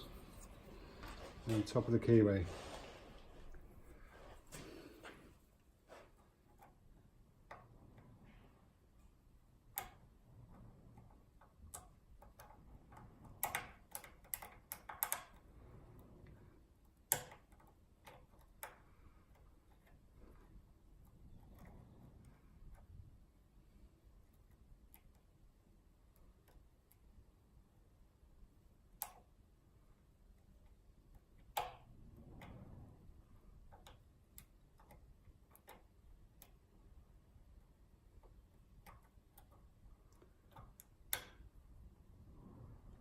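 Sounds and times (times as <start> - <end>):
lock pick clicking in lock: 11.0 - 15.4, 28.9 - 29.3, 33.7 - 36.6.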